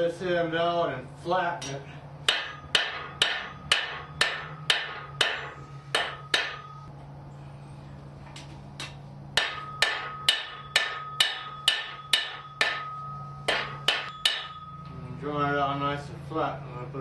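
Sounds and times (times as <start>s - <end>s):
low hum: 0.0s - 17.0s
hammer blows on anvil: 1.6s - 6.9s, 8.8s - 15.0s.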